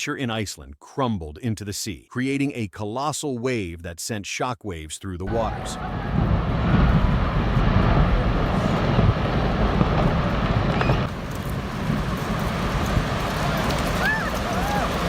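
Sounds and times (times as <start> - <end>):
churning water: 5.3 - 15.0
glacier ice collapsing roar: 5.3 - 15.0.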